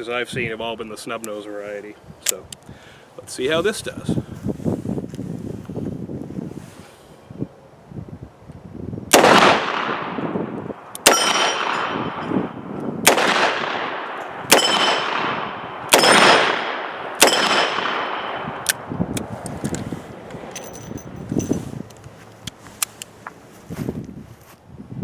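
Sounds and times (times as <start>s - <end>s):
revolver gunshots echoing: 9.1s - 10.3s, 11.0s - 18.7s.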